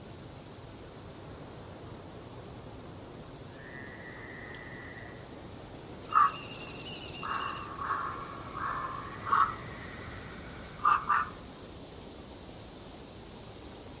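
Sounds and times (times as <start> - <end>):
background hiss: 0.0 - 14.0
birds calling: 6.0 - 11.5.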